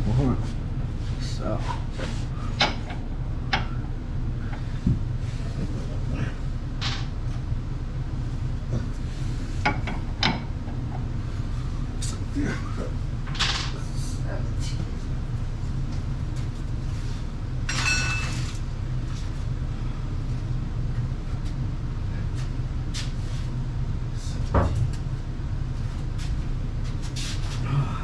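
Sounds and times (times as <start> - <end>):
steady low hum: 0.0 - 28.0
metal tools clinking and knocking: 17.7 - 18.5.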